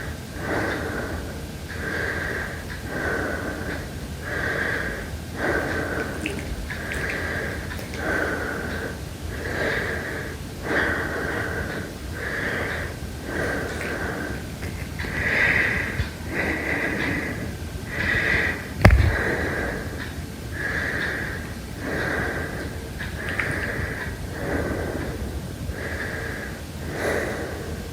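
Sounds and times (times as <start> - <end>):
heavy whistling breathing: 0.0 - 27.9
sharp knock: 18.8 - 19.2.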